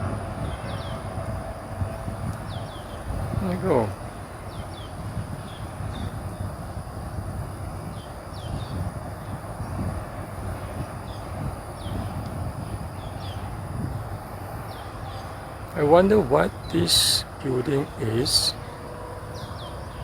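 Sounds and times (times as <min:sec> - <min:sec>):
busy road traffic rumble: 0:00.0 - 0:20.0
bird chirping: 0:00.4 - 0:01.1, 0:02.4 - 0:06.5, 0:07.8 - 0:09.9, 0:10.9 - 0:13.8, 0:14.6 - 0:20.0.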